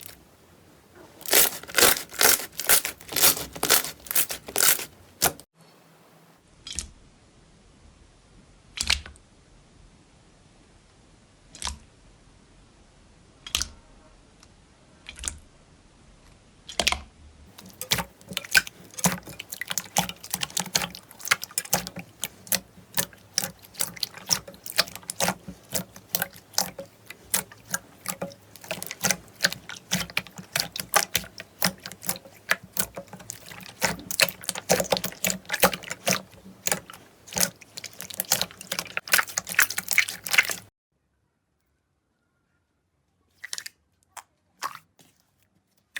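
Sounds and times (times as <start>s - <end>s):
slime squelching and popping: 0.0s - 0.2s, 1.0s - 5.5s, 17.5s - 40.7s.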